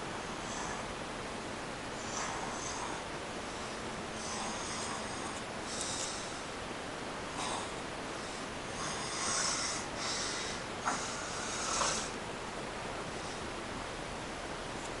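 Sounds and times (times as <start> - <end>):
steady hiss: 0.0 - 15.0
person snoring: 2.0 - 3.0, 4.2 - 6.4, 8.7 - 12.2.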